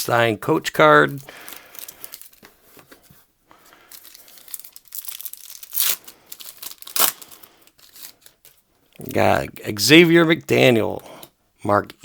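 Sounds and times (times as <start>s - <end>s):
wax paper wrapper crinkling: 0.8s - 3.0s, 3.8s - 9.2s
wrapper ripping: 1.1s - 2.4s, 3.9s - 9.2s.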